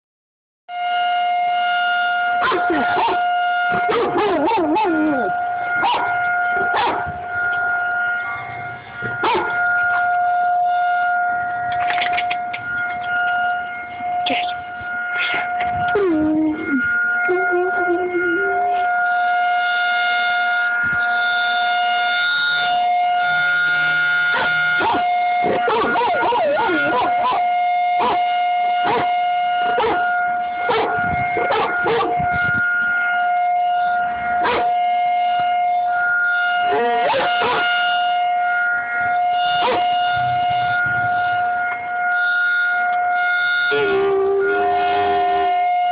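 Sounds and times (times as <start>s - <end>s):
tornado warning siren: 0.7s - 45.9s
dog howling: 3.9s - 7.0s, 36.7s - 37.7s.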